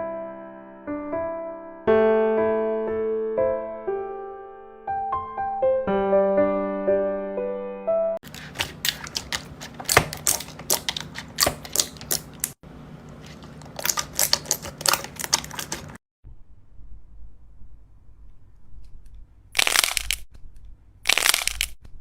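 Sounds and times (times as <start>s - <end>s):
faint low rumble: 16.3s - 19.5s.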